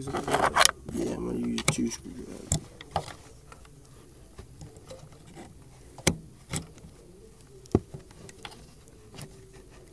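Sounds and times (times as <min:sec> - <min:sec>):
screwdrivers clicking on metal: 0:04.4 - 0:09.9.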